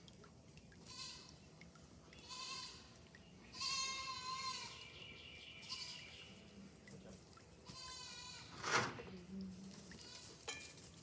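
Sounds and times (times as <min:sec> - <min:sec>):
goats bleating: 0:03.6 - 0:04.7.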